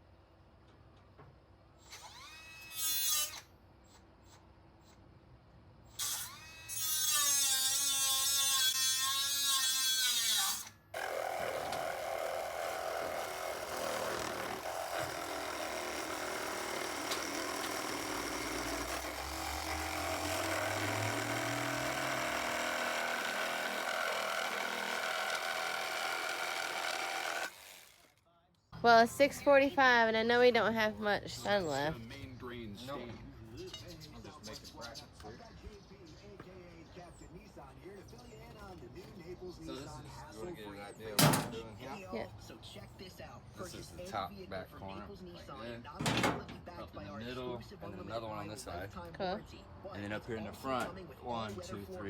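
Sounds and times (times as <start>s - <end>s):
handheld power tool running: 11.0s - 28.2s.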